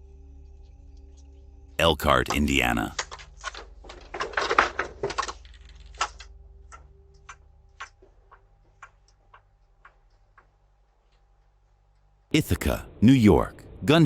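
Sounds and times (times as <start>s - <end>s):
faint electrical hum: 0.0s - 14.0s
knocks and rattles: 2.3s - 10.6s.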